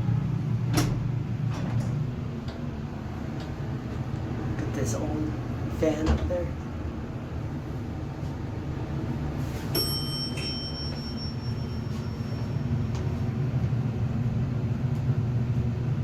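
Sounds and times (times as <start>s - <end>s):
elevator hum and rumble: 0.0s - 16.0s
elevator chime: 9.6s - 13.3s.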